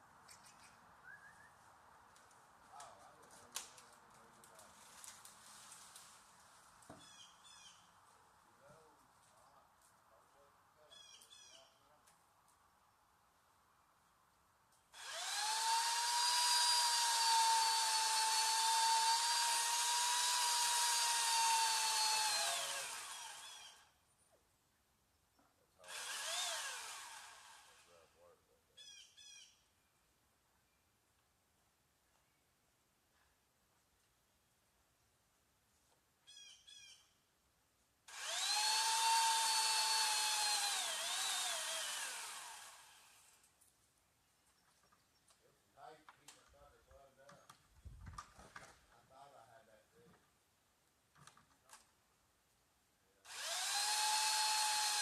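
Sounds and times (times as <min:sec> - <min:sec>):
power tool motor whirring: 0:15.0 - 0:23.8, 0:25.8 - 0:27.9, 0:38.1 - 0:43.4, 0:53.3 - 0:55.0.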